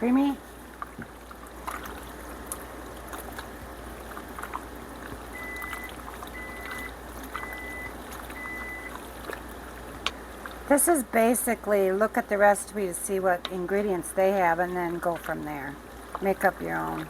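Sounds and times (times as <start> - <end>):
sauce bubbling in a pan: 0.2 - 17.0
electronic beeps: 5.4 - 8.9.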